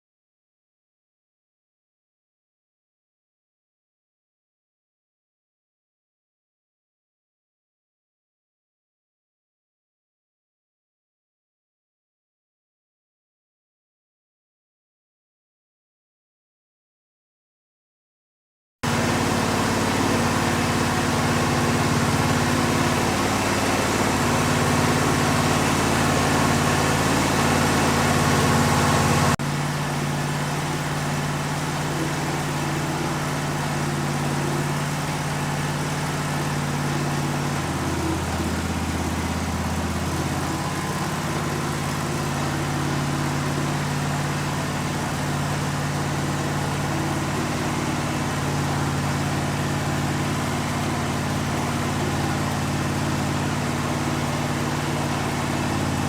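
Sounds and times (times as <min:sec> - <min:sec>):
sawmill engine running: 0:18.8 - 0:56.0.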